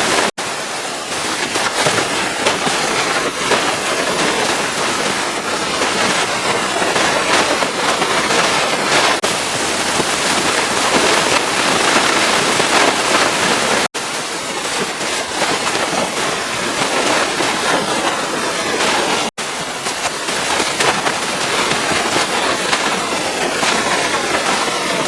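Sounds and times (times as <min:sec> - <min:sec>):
pressure washer spraying: 0:00.0 - 0:25.0.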